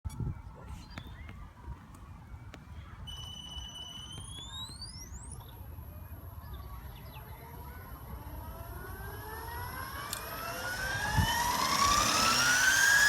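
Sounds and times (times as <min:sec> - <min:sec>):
wind rumble on microphone: 0:00.1 - 0:03.2, 0:10.9 - 0:12.3
electric motor whine: 0:08.0 - 0:13.0.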